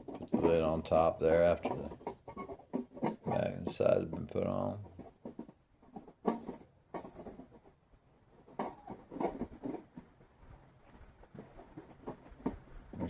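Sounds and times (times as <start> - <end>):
metal panels clicking and knocking: 0.0 - 7.6
faint scraping: 0.0 - 13.0.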